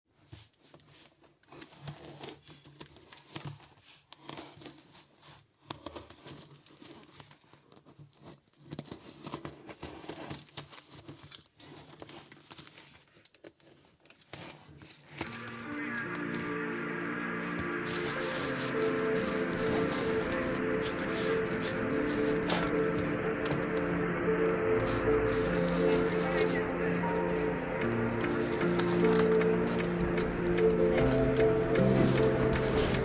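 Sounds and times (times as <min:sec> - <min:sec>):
packaging crumpled and torn: 0:01.4 - 0:16.4.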